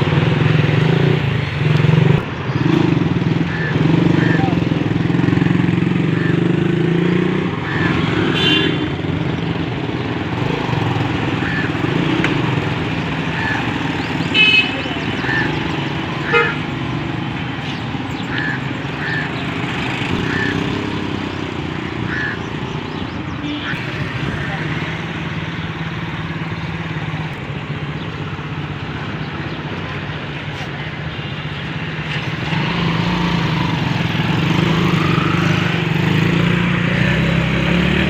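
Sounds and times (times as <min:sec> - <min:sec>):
street traffic: 0:00.0 - 0:38.0
people talking: 0:04.1 - 0:04.9, 0:14.4 - 0:15.7, 0:23.8 - 0:25.4
vehicle horn tooting: 0:08.3 - 0:08.9, 0:14.3 - 0:15.5, 0:16.2 - 0:16.6, 0:23.4 - 0:23.9.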